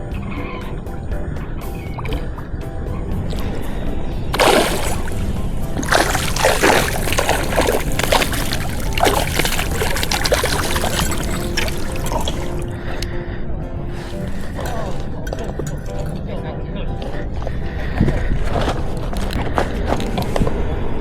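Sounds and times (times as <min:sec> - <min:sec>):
background music: 0:00.0 - 0:19.6
water splashing from thrashing fish: 0:04.4 - 0:12.7.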